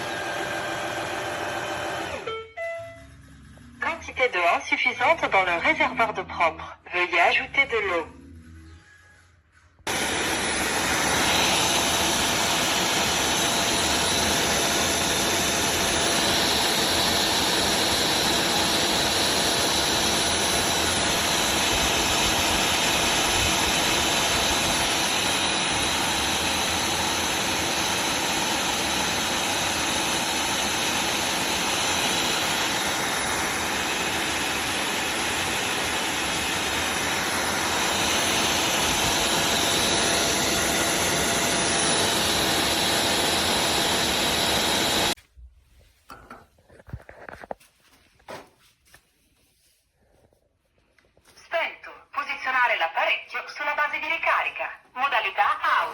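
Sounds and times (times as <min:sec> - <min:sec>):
floor vacuum running: 0:00.0 - 0:02.6, 0:08.2 - 0:45.3.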